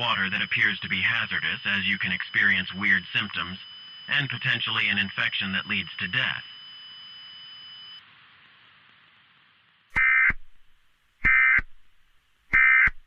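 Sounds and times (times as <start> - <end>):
buzzy screeching data tones: 0.0 - 6.9, 10.0 - 10.4, 11.2 - 11.6, 12.5 - 13.0
faint hiss: 7.9 - 12.5.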